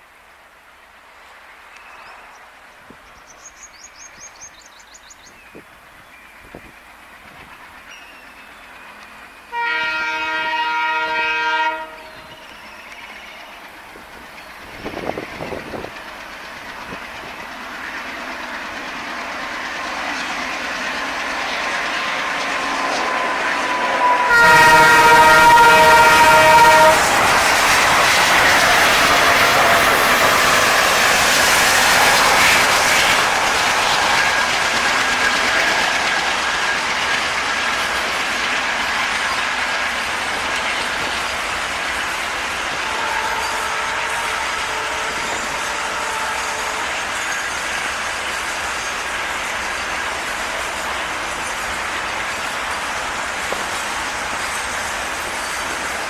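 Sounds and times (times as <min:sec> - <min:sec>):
train horn blast: 0:09.5 - 0:12.4, 0:23.2 - 0:27.3, 0:42.7 - 0:47.1
train wheels clattering: 0:12.1 - 0:56.0
diesel locomotive rumble: 0:13.5 - 0:56.0.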